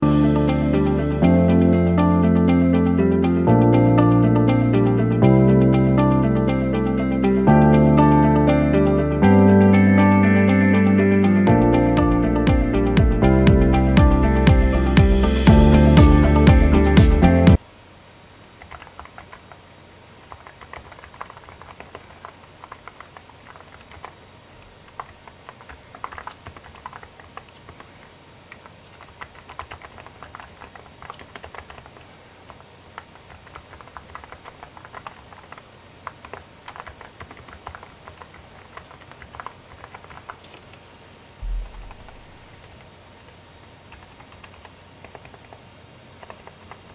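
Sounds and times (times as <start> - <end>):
low thump: 41.4 - 42.7.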